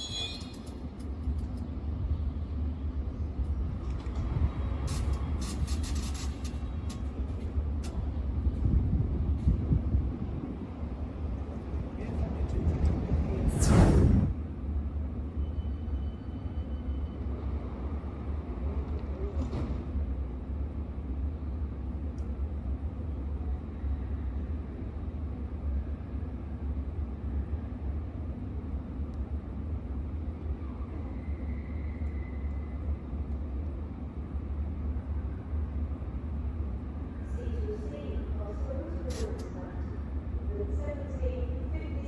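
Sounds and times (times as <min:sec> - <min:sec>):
station low rumble: 0:06.5 - 0:15.4, 0:20.4 - 0:42.0.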